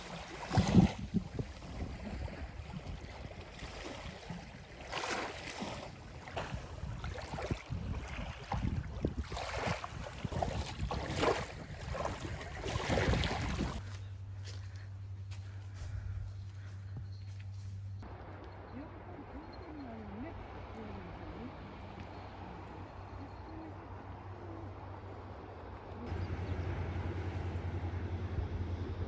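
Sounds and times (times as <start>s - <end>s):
ocean waves breaking: 0.0s - 13.8s
wind buffeting microphone: 0.0s - 13.9s.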